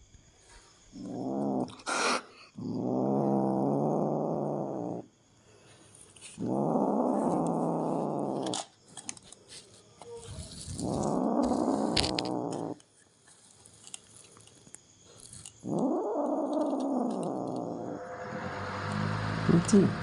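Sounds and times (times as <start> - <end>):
cat growling: 0.9 - 5.1, 6.3 - 8.7, 10.2 - 12.8, 15.3 - 20.0.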